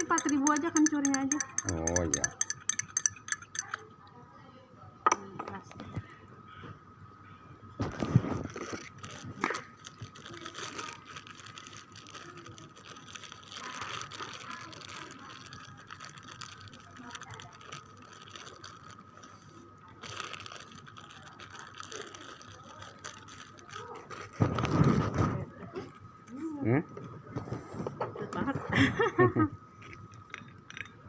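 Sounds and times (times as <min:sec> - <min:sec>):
plastic bag clicks and rustles: 0:07.9 - 0:19.4, 0:20.0 - 0:25.1.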